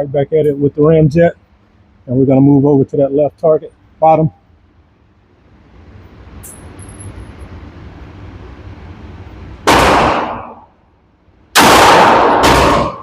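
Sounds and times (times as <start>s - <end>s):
pistol shots with ringing tail: 9.7s - 10.7s, 11.6s - 13.0s.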